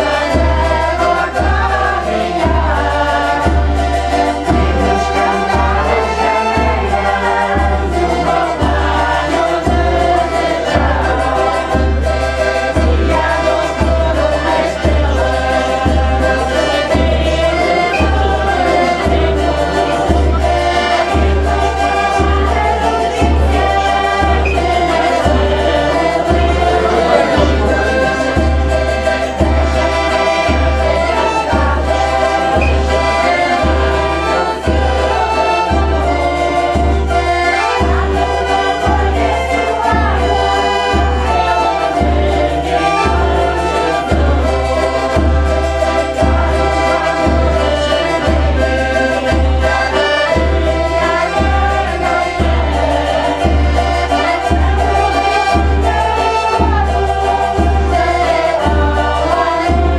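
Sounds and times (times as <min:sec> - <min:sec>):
group singing in chorus: 0:00.0 - 0:59.9
instrumental accompaniment: 0:00.0 - 0:59.9
steady low beat: 0:23.1 - 0:34.0.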